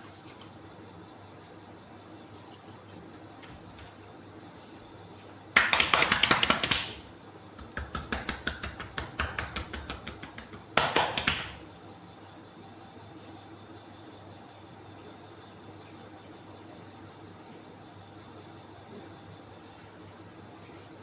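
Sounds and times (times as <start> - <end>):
hands slapping on skin: 5.6 - 7.0, 7.6 - 11.6.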